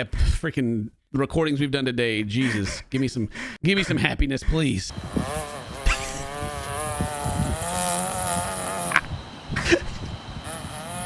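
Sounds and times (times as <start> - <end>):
dog farting: 5.2 - 7.6.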